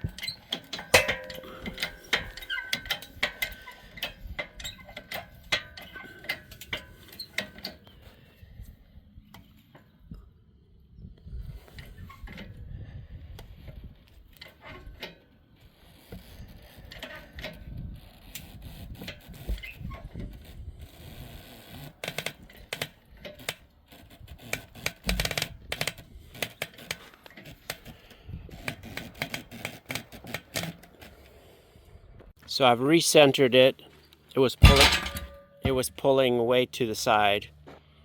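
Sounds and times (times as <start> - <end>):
wheel popping loose thump: 0.7 - 3.0, 34.6 - 35.8.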